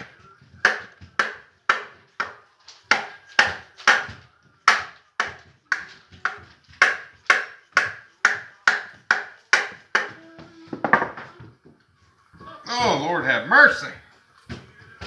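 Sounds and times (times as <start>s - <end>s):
rubber mallet striking metal: 0.6s - 10.2s.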